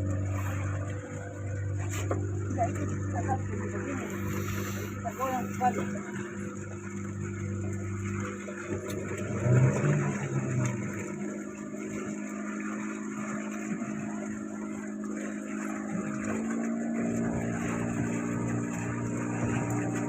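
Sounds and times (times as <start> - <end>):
boat engine running: 0.0 - 20.0.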